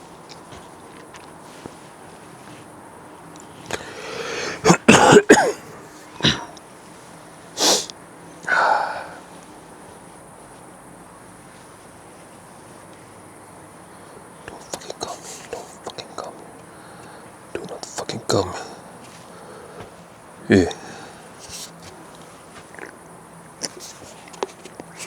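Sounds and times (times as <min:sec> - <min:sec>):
person coughing: 0:03.8 - 0:06.6, 0:20.4 - 0:21.1.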